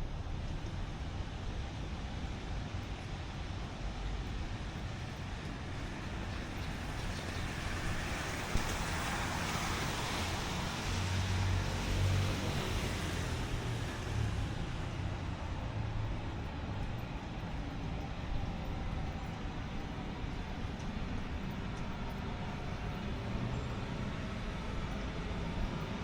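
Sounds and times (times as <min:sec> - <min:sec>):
street noise: 0:00.0 - 0:26.0
vehicle engine hum: 0:00.0 - 0:26.0
vehicle tyres hissing on wet road: 0:04.6 - 0:16.0.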